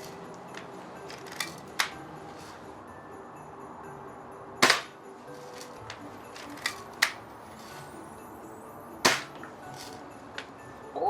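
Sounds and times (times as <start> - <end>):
bb gun shots cracking: 4.6 - 4.9, 9.1 - 9.4.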